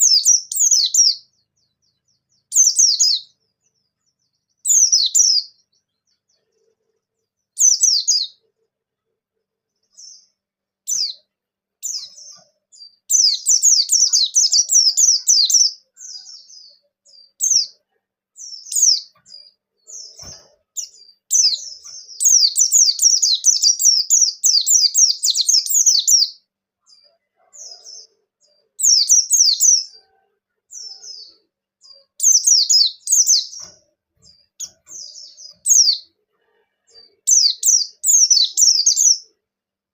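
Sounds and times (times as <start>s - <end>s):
white-eye bird twittering: 19.9s - 26.4s, 32.2s - 33.7s.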